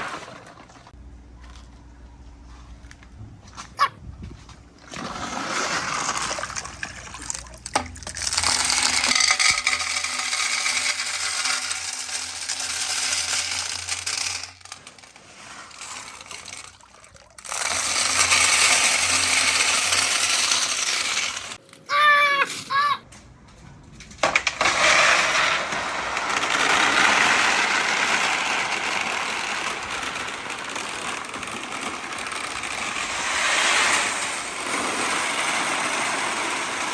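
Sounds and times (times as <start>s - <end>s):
marbles rattling down wooden run: 5.7s - 21.6s, 24.2s - 36.9s
high-pitched voice-like squeal: 21.9s - 23.0s.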